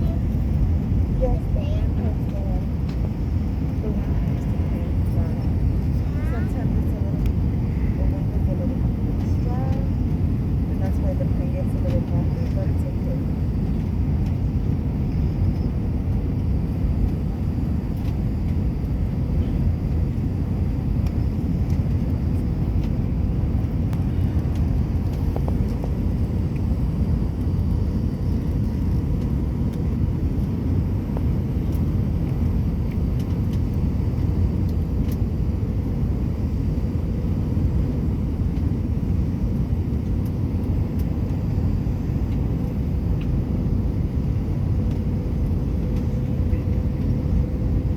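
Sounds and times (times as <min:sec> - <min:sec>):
jet engine cabin rumble: 0:00.0 - 0:47.9.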